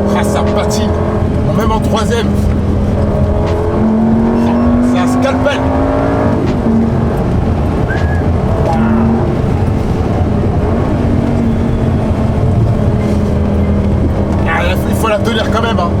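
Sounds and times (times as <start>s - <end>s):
car engine under load: 0.0s - 16.0s
road and tyre noise: 0.0s - 16.0s.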